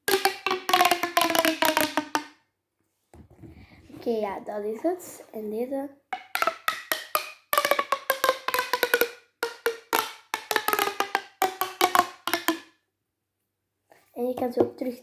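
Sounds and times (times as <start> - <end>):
plastic pop tubes snapping: 0.0 - 2.4, 6.2 - 12.7.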